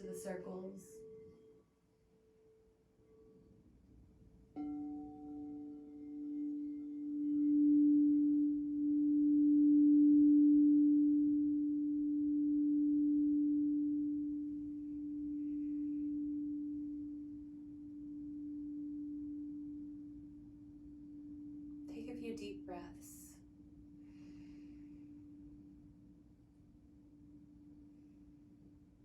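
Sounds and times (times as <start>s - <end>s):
crystal singing bowl ringing: 4.5s - 25.8s.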